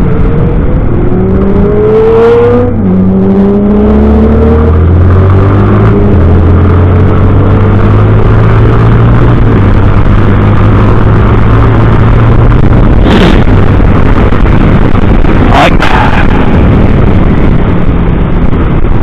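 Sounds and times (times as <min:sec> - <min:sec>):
loud rushing noise: 0:07.9 - 0:19.0.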